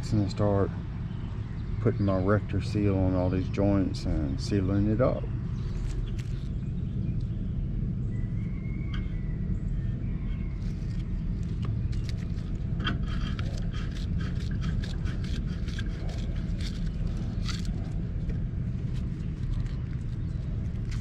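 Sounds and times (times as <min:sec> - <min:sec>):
steady low rumble: 0:00.0 - 0:21.0
metallic clicks and scrapes: 0:10.7 - 0:18.0.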